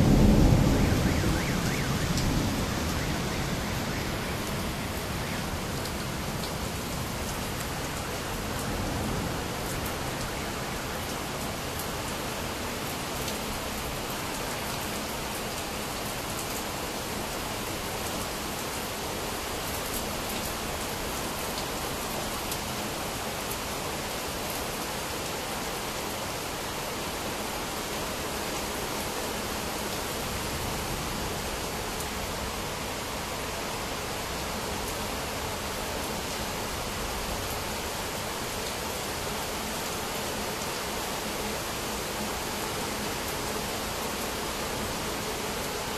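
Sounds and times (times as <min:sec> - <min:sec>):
heavy rain hissing: 0:00.0 - 0:45.9
sharp raindrop ticks: 0:00.9 - 0:03.4.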